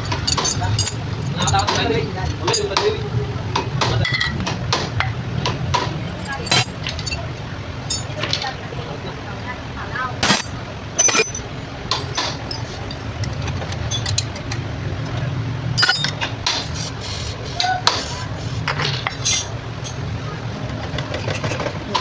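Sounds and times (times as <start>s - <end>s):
metallic clinks and knocks: 0.0s - 2.8s, 6.0s - 8.3s, 10.2s - 14.6s, 15.8s - 16.9s, 19.1s - 20.1s.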